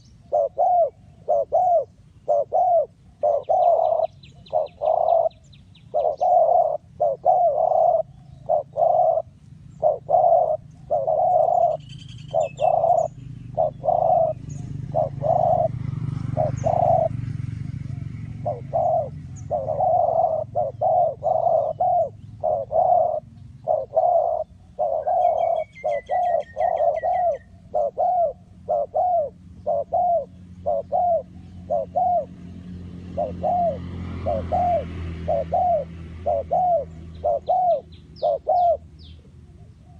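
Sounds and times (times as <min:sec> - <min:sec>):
doves cooing: 0:00.0 - 0:39.9
high bird chirps: 0:09.8 - 0:15.7, 0:18.2 - 0:28.0.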